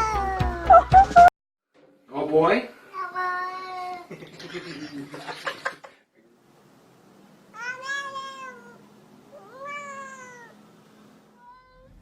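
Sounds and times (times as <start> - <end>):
cat meowing: 7.6 - 10.6, 11.4 - 12.0.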